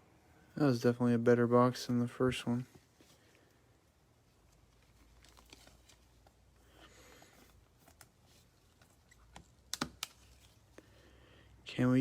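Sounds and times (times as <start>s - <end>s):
faint clicks and rustles: 2.7s - 10.9s.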